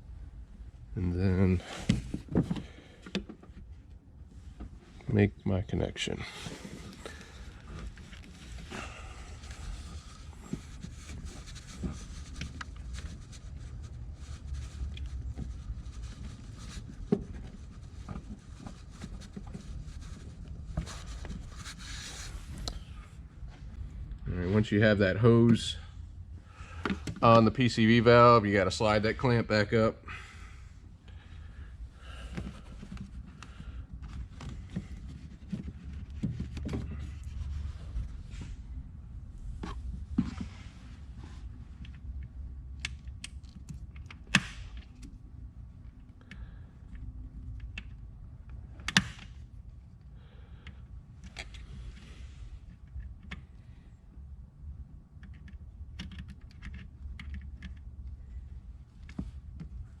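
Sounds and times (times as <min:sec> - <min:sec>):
small clicks and rustling: 0:06.5 - 0:22.9, 0:55.1 - 1:00.0.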